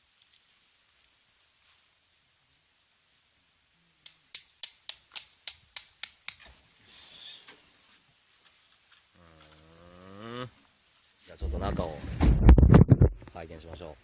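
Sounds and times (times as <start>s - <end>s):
hammer striking metal tent peg: 4.0s - 6.6s.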